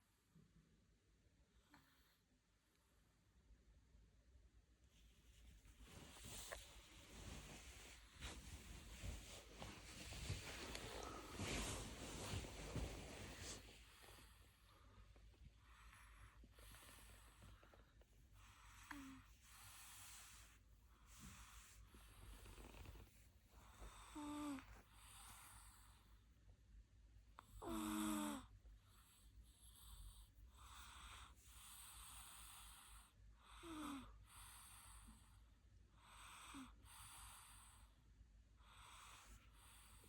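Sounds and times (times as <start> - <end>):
toddler snoring faintly: 18.5 - 20.5, 23.6 - 26.0, 27.4 - 28.6, 29.7 - 35.4, 36.0 - 37.9.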